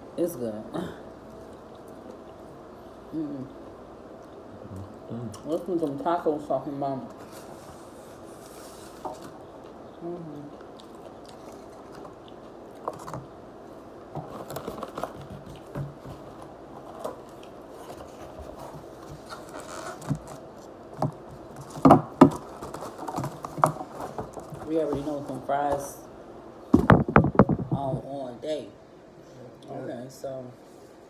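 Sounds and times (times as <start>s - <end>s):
chewing: 1.2s - 3.0s, 4.2s - 5.9s, 9.2s - 13.4s, 16.3s - 20.7s
food containers rustling: 7.1s - 9.5s, 12.8s - 26.0s, 26.8s - 28.0s
loud knocks: 26.7s - 28.0s.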